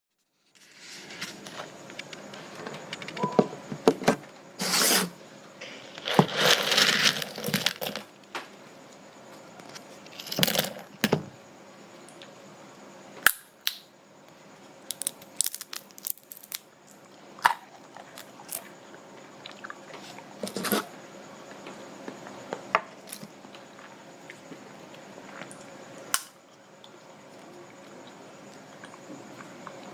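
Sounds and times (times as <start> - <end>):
crunching: 5.6 - 8.1, 14.9 - 16.6
seeds cracking between teeth: 14.9 - 16.6.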